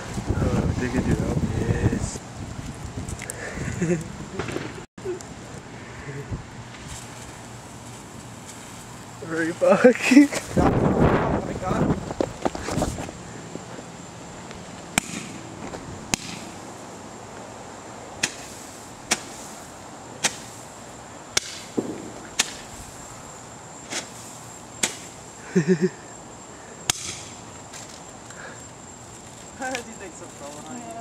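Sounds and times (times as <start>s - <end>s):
fireworks cracking: 3.6s - 5.3s, 18.2s - 25.8s.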